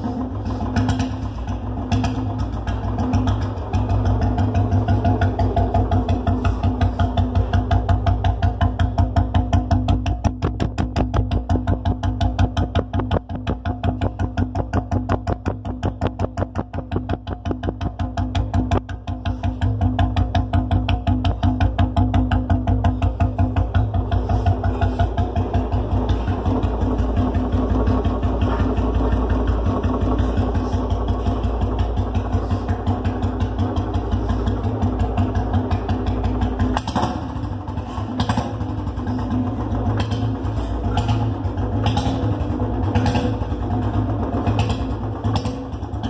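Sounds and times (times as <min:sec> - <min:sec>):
motorcycle engine running: 0:00.0 - 0:46.0
exhaust pops: 0:09.6 - 0:25.0.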